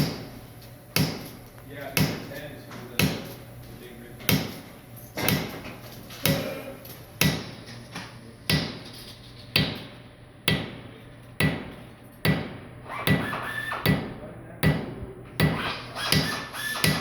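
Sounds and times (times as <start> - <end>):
hammer striking metal with ring: 11.4 - 17.0.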